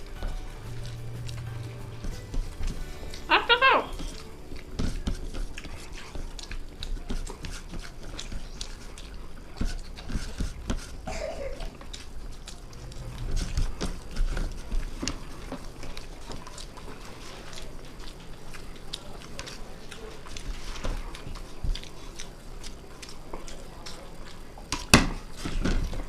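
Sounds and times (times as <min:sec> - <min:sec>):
food scooped from plates: 0:00.0 - 0:26.0
people chewing and smacking: 0:00.0 - 0:26.0.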